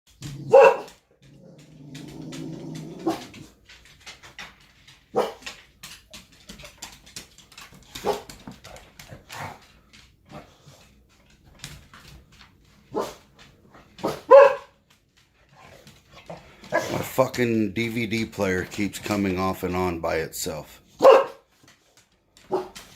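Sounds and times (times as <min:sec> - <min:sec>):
dog barking: 0:00.4 - 0:01.0, 0:05.1 - 0:05.4, 0:08.0 - 0:08.3, 0:12.9 - 0:13.2, 0:14.0 - 0:14.8, 0:16.7 - 0:17.0, 0:21.0 - 0:21.5, 0:22.5 - 0:22.8.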